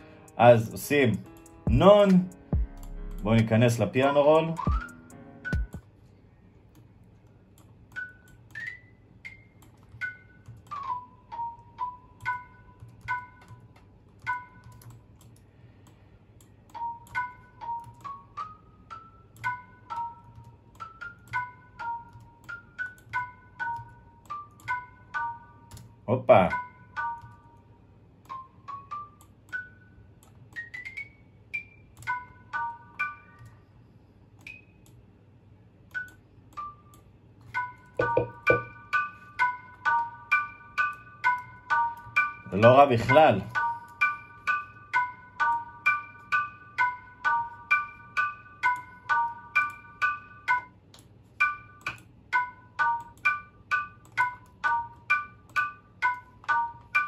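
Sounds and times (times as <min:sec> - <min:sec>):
bell-like sampled instrument melody: 0:00.0 - 0:05.8, 0:30.6 - 0:33.7, 0:37.6 - 0:50.8, 0:51.4 - 0:57.0
bell melody: 0:37.6 - 0:50.7.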